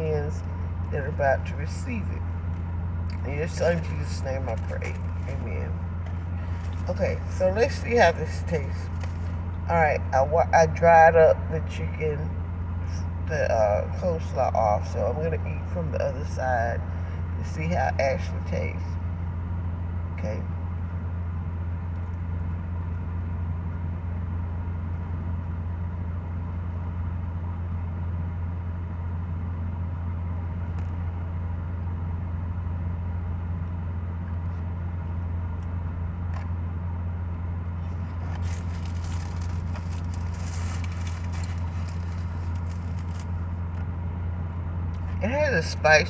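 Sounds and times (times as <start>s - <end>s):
car engine idling: 0.0s - 46.0s
crackling: 37.8s - 43.8s.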